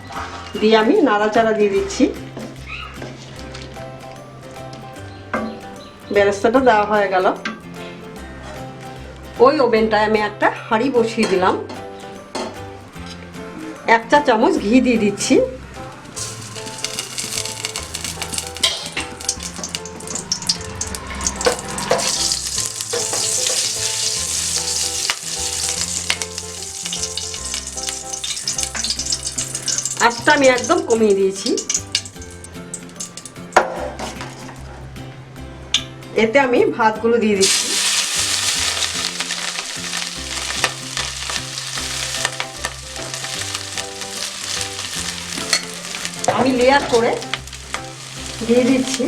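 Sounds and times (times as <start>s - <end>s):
ghee sizzling in a pot: 16.0s - 34.6s, 37.4s - 49.0s.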